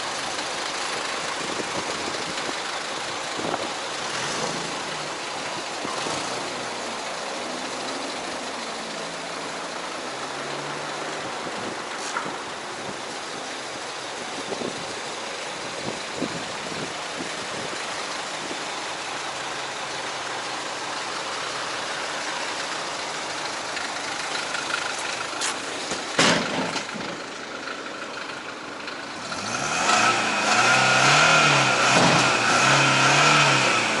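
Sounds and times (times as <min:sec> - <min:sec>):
car engine revving: 0:03.4 - 0:13.0, 0:29.1 - 0:34.0
sharp knock: 0:26.2 - 0:27.0.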